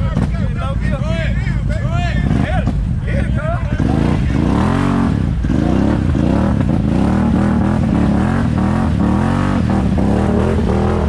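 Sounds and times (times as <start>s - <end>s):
atv engines revving: 0.0s - 11.0s.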